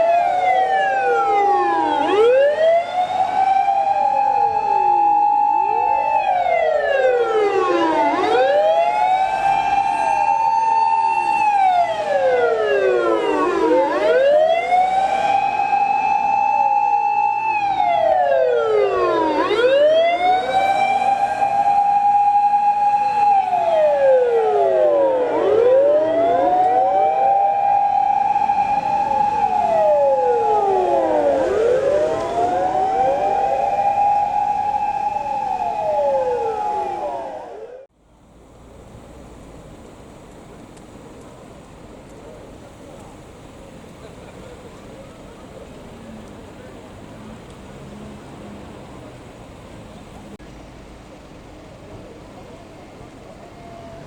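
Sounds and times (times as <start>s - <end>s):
fire engine sirens wailing: 0.0s - 37.9s, 52.0s - 54.0s.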